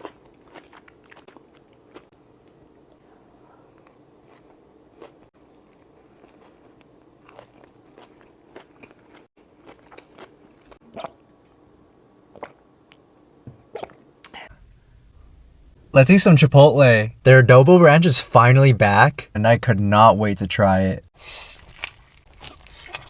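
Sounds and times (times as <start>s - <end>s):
crunchy bites and chewing: 0.0s - 3.0s, 3.6s - 11.1s, 21.4s - 23.0s.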